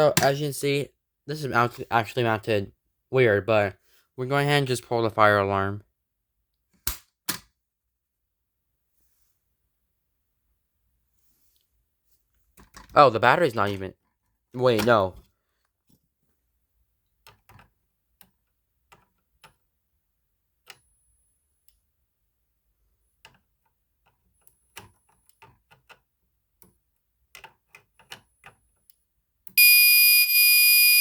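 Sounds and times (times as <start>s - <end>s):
high-pitched fire alarm tone: 29.6s - 31.0s.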